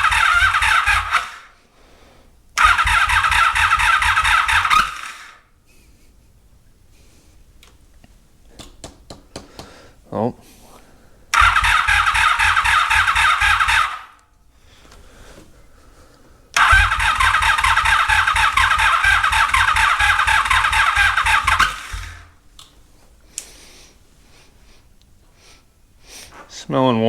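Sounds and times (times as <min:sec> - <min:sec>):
starter cranking engine: 0:00.0 - 0:01.5, 0:02.6 - 0:05.4, 0:11.3 - 0:14.2, 0:16.6 - 0:22.4.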